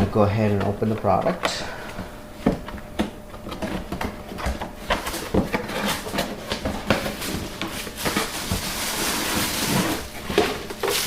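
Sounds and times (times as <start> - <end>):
packaging rustling: 3.4 - 11.0.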